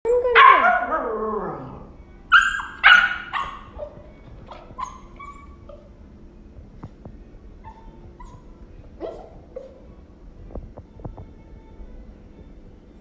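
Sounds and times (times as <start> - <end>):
puppy barking and crying: 0.1 - 6.0, 7.6 - 9.9
faint puppy yips: 2.3 - 5.9, 7.6 - 9.9.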